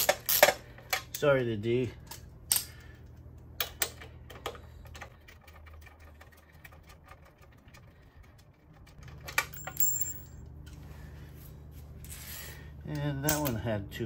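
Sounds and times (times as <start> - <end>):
metal nuts and washers clinking: 0.0 - 1.4, 8.8 - 10.5.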